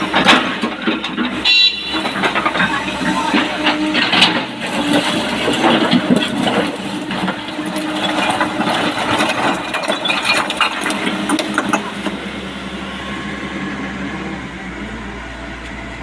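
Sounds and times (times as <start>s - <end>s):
rattles and knocks: 0.0s - 12.2s
diesel machinery running: 0.0s - 16.0s.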